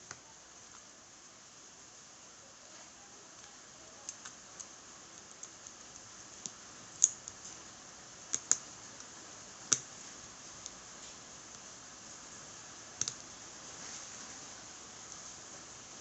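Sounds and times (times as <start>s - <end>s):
small hard parts clicking: 4.1s - 7.6s.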